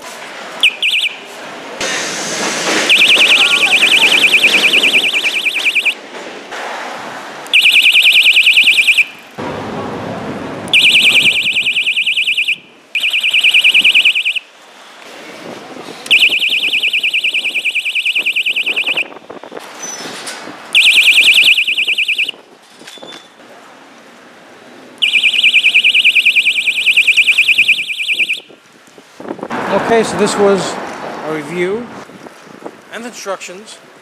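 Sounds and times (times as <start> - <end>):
electronic bicycle horn blasts: 0.6 - 1.2, 2.9 - 6.0, 7.5 - 9.3, 10.7 - 14.4, 16.1 - 19.1, 20.8 - 22.4, 25.0 - 28.5.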